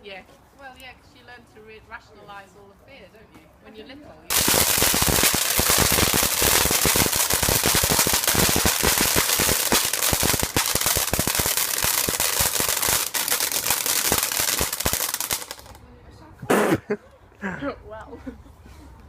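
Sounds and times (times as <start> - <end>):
firework crackling: 4.3 - 15.8.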